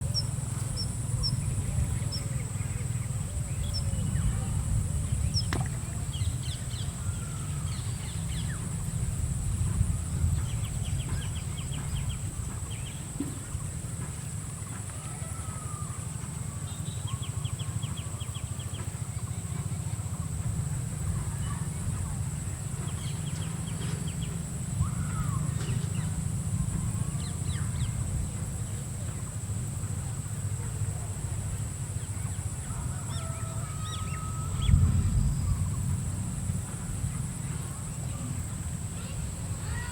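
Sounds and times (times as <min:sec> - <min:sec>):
bird calls: 0:00.0 - 0:20.4, 0:21.0 - 0:36.0
rapid rattling bird trills: 0:00.0 - 0:39.9
low rumble: 0:34.0 - 0:39.6.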